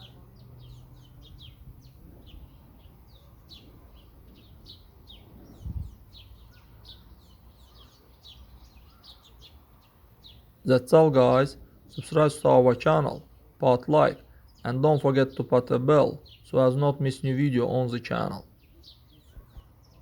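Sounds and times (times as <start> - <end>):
small birds chirping: 0.0 - 20.0.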